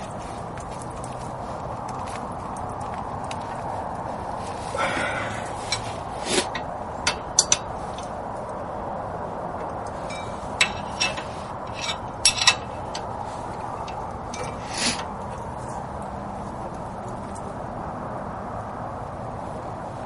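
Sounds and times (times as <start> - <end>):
steel wrenches clinking: 4.8 - 8.8, 9.6 - 17.4.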